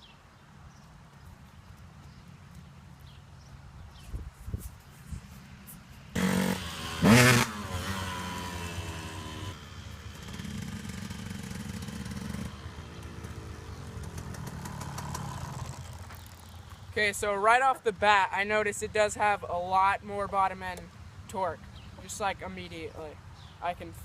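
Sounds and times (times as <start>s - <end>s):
dirt bike engine revving: 6.2s - 16.7s.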